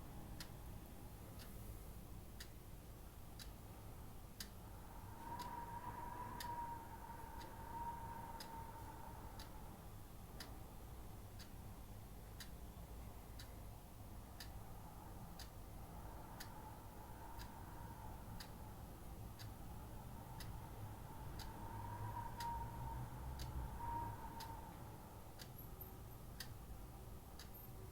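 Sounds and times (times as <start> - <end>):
clock ticking faintly: 0.3 - 1.6, 2.4 - 3.6, 4.3 - 4.6, 10.4 - 10.6, 11.4 - 13.7, 14.3 - 14.8, 15.4 - 17.8, 19.3 - 20.7, 21.3 - 22.8, 25.4 - 27.9
thin wavering whistle: 4.9 - 9.4, 21.2 - 24.7.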